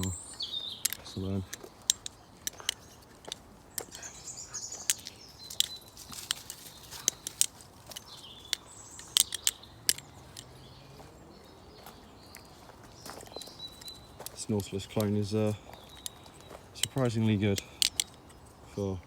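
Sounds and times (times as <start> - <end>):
butterfly knife trainer clacking: 0.0 - 10.5, 13.3 - 18.5
birds chirping faintly: 0.0 - 19.0.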